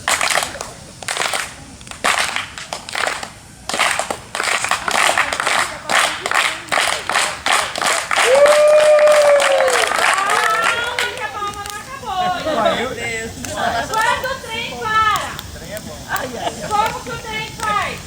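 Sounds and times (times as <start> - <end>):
crowd clapping in rhythm: 0.0 - 11.9, 13.3 - 14.4, 15.1 - 18.0.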